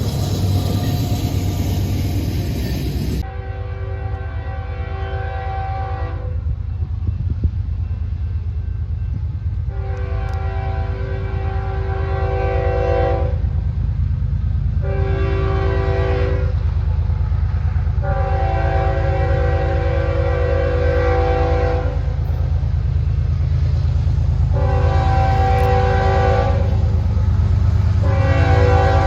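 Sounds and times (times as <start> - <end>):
moving train rumble: 0.0 - 29.0
train air horn blasts: 3.2 - 6.5, 9.7 - 13.5, 14.8 - 16.6, 18.0 - 22.3, 24.5 - 27.0, 27.9 - 29.0.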